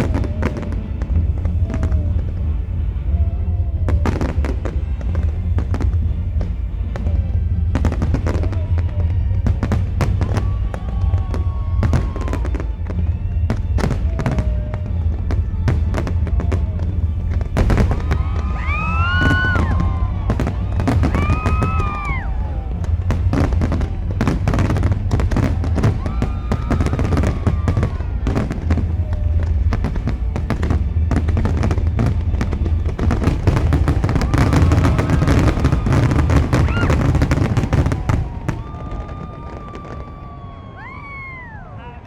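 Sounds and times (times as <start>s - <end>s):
deep rumble: 0.0s - 40.4s
fireworks bangs and crackling: 0.0s - 41.4s.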